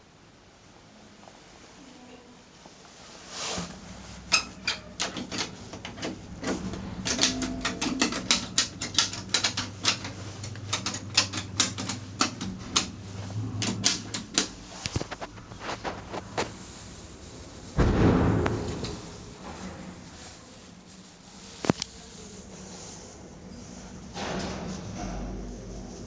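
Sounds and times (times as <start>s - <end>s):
metallic clicking and knocking: 4.3s - 13.0s, 13.6s - 15.0s.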